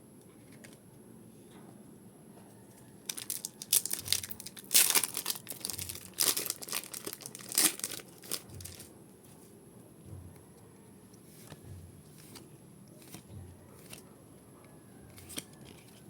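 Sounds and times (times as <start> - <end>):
wrapper tearing and crinkling: 3.1 - 8.9.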